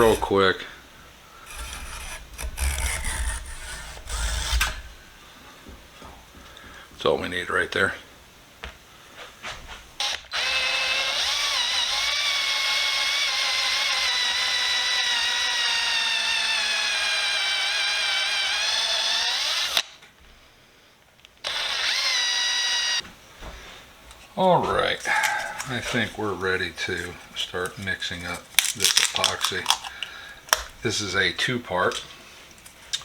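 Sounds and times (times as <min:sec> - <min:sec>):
electric drill whining: 0:00.0 - 0:00.3, 0:01.4 - 0:04.9, 0:10.0 - 0:19.9, 0:21.4 - 0:23.0.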